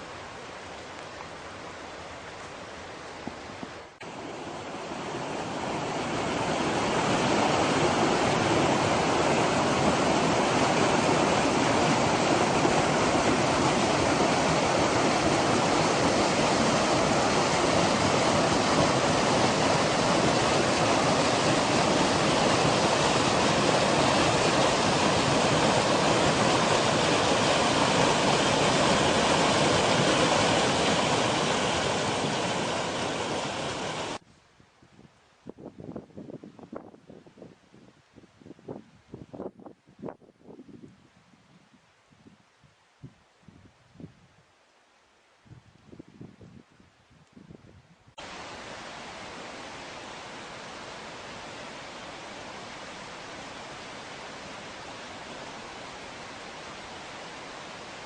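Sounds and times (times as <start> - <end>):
stream rushing: 0.0 - 34.2, 48.2 - 58.0.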